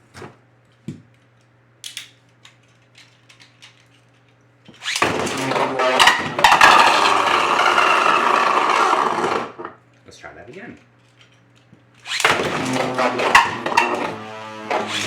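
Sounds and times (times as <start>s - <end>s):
spinning tops rattling whir: 4.7s - 9.6s, 12.0s - 15.0s.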